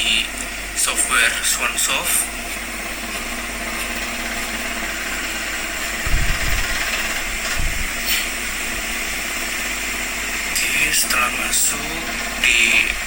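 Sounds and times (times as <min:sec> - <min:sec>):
low thumps: 0:06.0 - 0:08.0.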